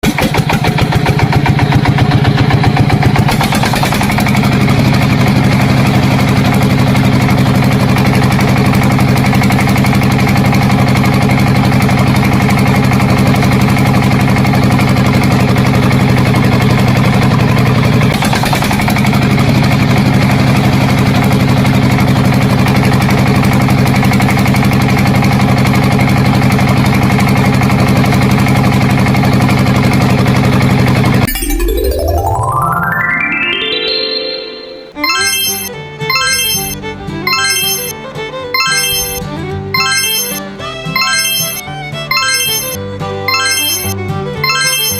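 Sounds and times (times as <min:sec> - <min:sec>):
tractor engine idling: 0:00.3 - 0:31.3.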